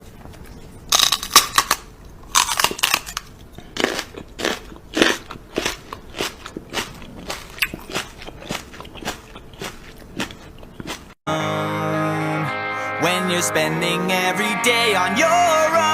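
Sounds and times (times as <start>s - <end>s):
crackly crunching: 0.0s - 11.2s.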